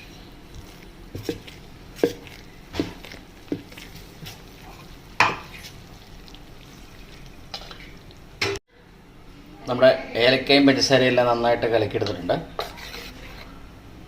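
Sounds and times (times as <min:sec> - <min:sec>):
utensil stirring thick batter: 0:00.0 - 0:08.2, 0:11.6 - 0:13.7.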